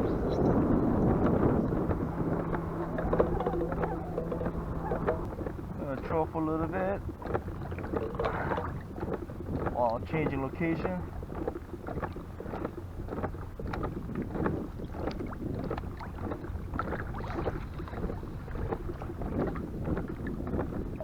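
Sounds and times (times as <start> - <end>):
water lapping against kayak hull: 0.0 - 21.0
wind buffeting microphone: 0.0 - 21.0.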